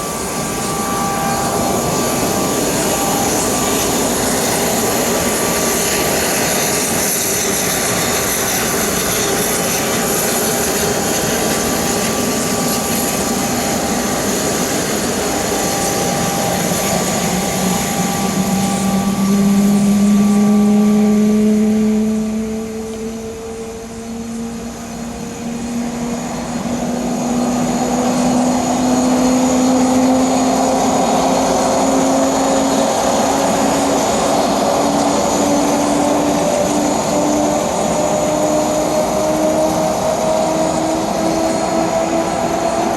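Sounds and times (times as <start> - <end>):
jet engines whining: 0.0 - 42.9
low tone rising in pitch: 16.9 - 33.6.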